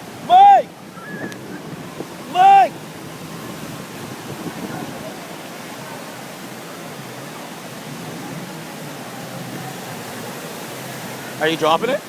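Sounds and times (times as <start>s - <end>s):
wind rushing over microphone: 0.0s - 11.4s.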